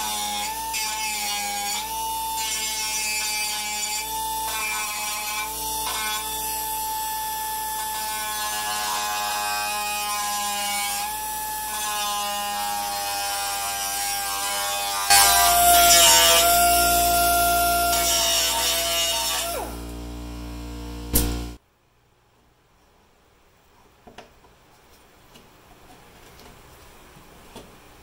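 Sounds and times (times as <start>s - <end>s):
electric power tool whine: 12.4s - 21.6s.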